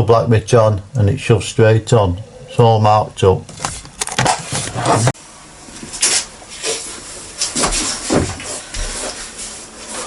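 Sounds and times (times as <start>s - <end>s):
rubbing and scraping of boards: 3.6s - 5.2s.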